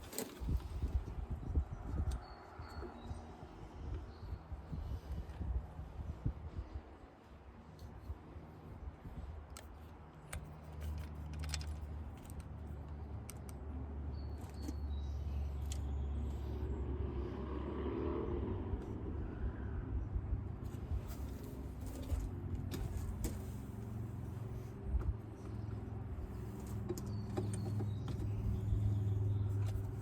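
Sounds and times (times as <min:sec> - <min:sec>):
passing vehicle rumble: 0:14.8 - 0:30.0.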